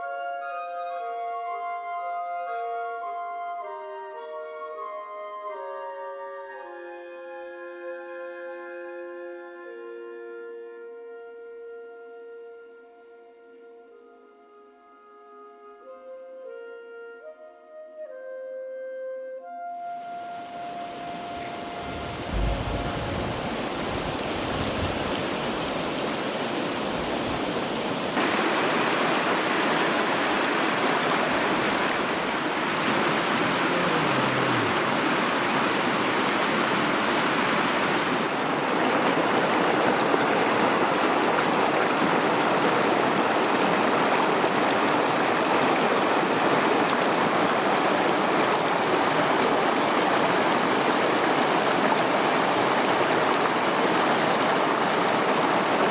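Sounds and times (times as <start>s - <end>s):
creek water babbling over rocks: 20.1s - 55.9s.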